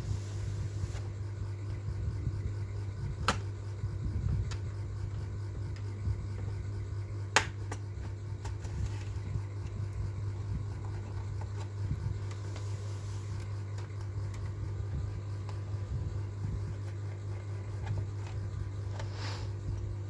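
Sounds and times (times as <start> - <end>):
steady low hum: 0.0 - 20.0.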